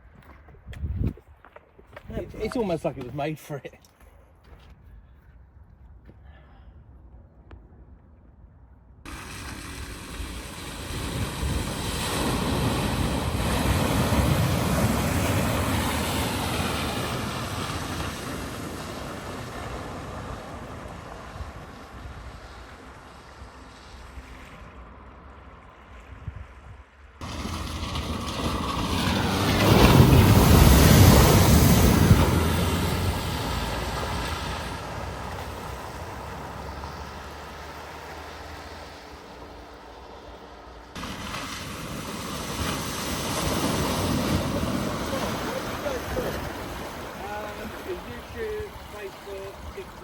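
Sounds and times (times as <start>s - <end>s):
vehicle engine noise: 8.9s - 50.0s
rush of water: 9.1s - 25.0s, 27.2s - 50.0s.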